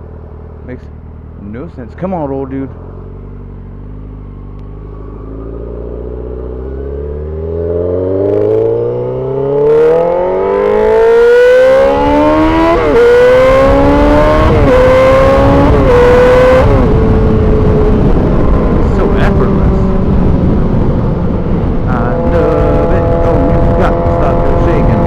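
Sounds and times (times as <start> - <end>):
motorcycle engine accelerating: 0.0 - 25.0
wind noise on microphone: 5.2 - 25.0.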